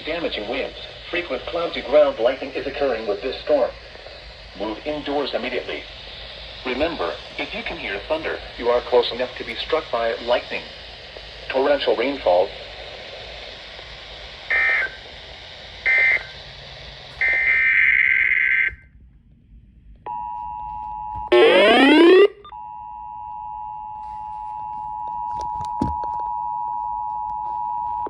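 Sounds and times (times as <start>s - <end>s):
two-tone attention signal: 21.3s - 22.5s.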